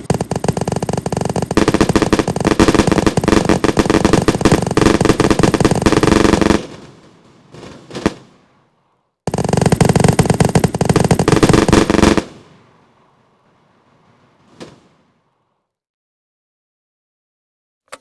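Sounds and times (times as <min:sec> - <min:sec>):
fireworks bangs and crackles: 0:00.0 - 0:15.4.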